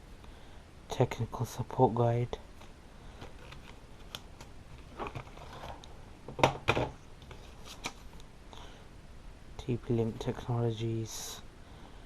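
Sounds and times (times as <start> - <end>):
paper rustling: 7.2 - 8.2.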